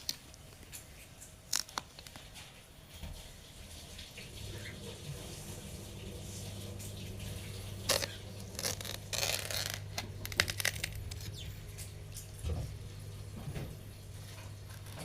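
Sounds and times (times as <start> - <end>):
steady low hum: 4.2 - 15.0
watermelon hissing and cracking: 7.8 - 11.9.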